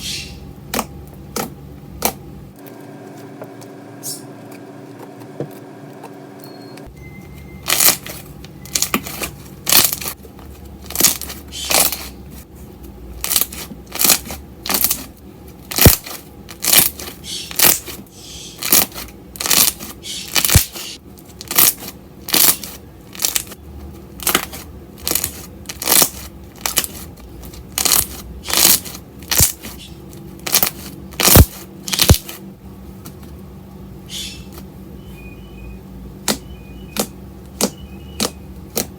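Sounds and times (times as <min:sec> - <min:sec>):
slime popping and crackling: 0:13.2 - 0:15.1, 0:15.7 - 0:17.9, 0:24.2 - 0:27.0, 0:27.7 - 0:29.7, 0:30.4 - 0:32.4.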